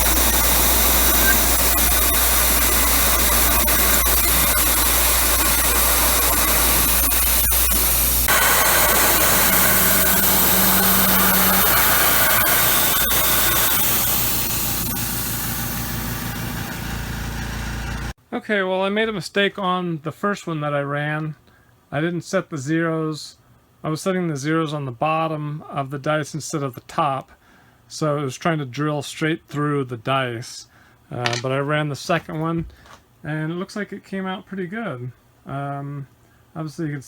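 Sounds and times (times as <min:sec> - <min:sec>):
cnc mill cutting metal: 0:00.0 - 0:18.1
low hum: 0:00.0 - 0:18.1.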